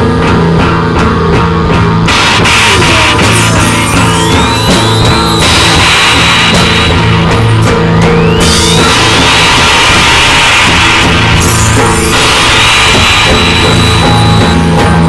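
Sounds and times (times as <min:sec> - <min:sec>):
loud rock music: 0:00.0 - 0:15.0
high note gliding upward: 0:03.4 - 0:15.0.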